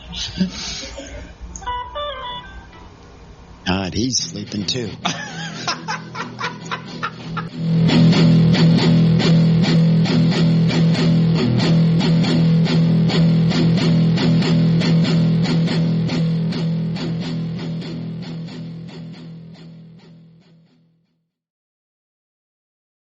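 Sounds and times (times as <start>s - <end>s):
strummed guitar chords: 1.4s - 21.0s.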